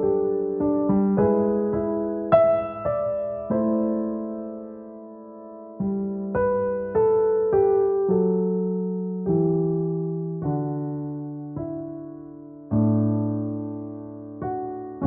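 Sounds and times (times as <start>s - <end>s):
soft slow piano chords: 0.0s - 15.0s.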